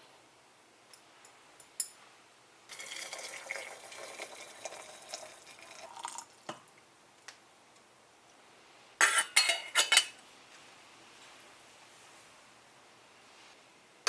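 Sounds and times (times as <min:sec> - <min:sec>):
water running into vessel: 0:02.7 - 0:06.5.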